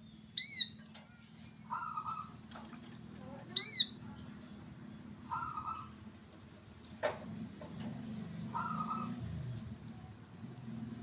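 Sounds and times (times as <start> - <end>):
small bird trilling: 0.4 - 0.8, 3.6 - 4.0.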